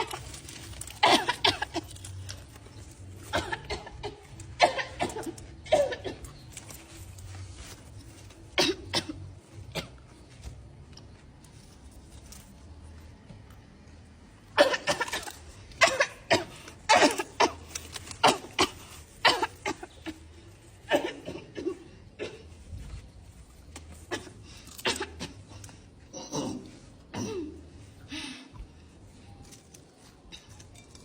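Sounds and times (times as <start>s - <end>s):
person coughing: 3.2s - 6.3s, 14.6s - 22.6s, 24.0s - 27.7s.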